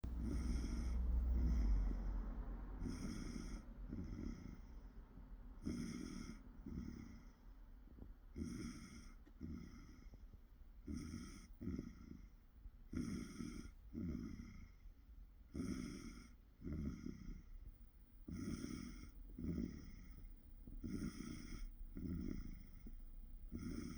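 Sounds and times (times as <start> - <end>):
low rumble: 0.0 - 5.6
person snoring: 0.2 - 2.0.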